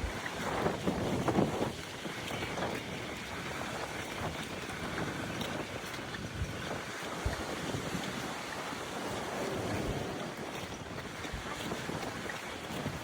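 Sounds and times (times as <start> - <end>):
surf on a beach: 0.0 - 13.0
wind buffeting microphone: 0.0 - 13.0.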